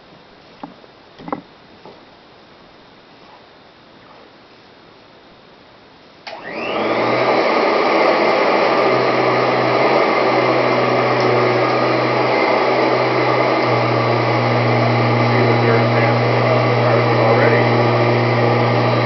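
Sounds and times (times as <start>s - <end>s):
vacuum cleaner motor whine: 6.2s - 19.0s.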